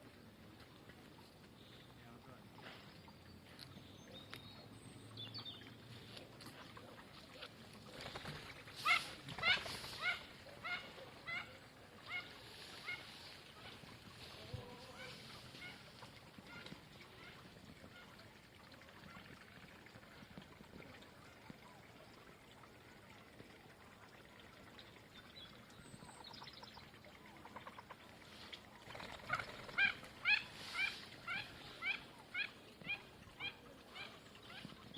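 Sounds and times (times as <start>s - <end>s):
ducks quacking: 8.0s - 18.2s, 29.0s - 34.9s.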